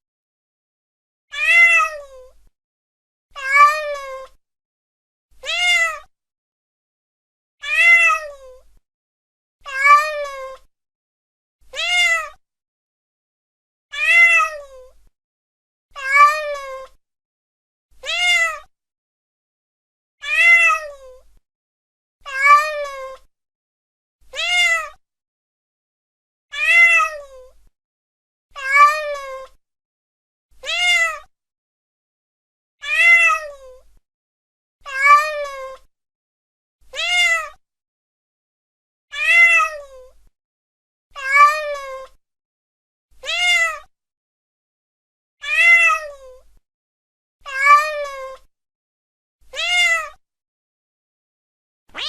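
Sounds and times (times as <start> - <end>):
cat meowing: 1.3 - 2.2, 3.4 - 4.4, 5.4 - 6.1, 7.6 - 8.6, 9.7 - 10.7, 11.7 - 12.4, 13.9 - 14.9, 16.0 - 17.0, 18.0 - 18.7, 20.2 - 21.2, 22.3 - 23.3, 24.3 - 25.0, 26.5 - 27.5, 28.6 - 29.6, 30.6 - 31.3, 32.8 - 33.7, 34.9 - 35.9, 36.9 - 37.6, 39.1 - 40.0, 41.2 - 42.2, 43.2 - 43.9, 45.4 - 46.4, 47.5 - 48.5, 49.5 - 50.2.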